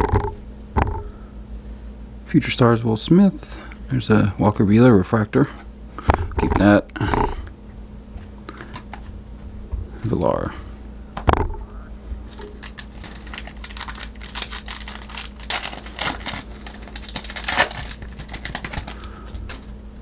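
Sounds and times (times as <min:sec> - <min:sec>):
foil wrapper crinkling: 0:12.3 - 0:19.8.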